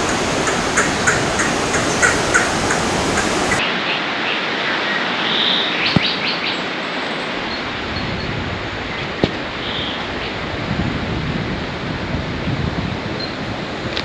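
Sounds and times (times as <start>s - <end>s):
bird chirping high calls: 0.0s - 3.6s
steady rushing noise: 0.0s - 3.6s.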